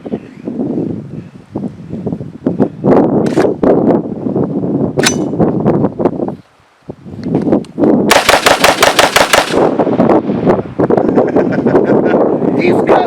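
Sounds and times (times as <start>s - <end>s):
wind on microphone: 0.0s - 13.0s
rifle rapid fire: 8.1s - 9.7s.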